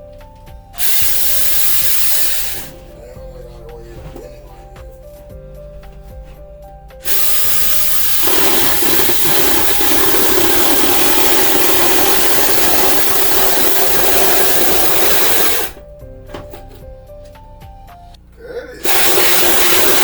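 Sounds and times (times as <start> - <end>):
electric saw cutting wood: 7.1 - 15.8, 18.8 - 20.0.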